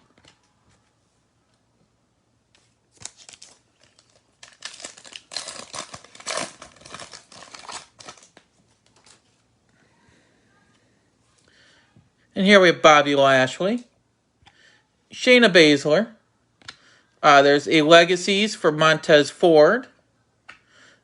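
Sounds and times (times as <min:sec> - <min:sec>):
foil wrapper tearing and crinkling: 0:02.9 - 0:08.4.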